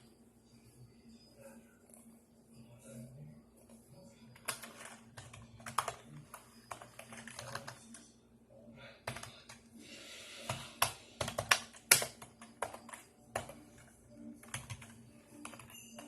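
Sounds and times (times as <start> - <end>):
computer clicks and taps: 4.4 - 8.1, 10.4 - 16.0.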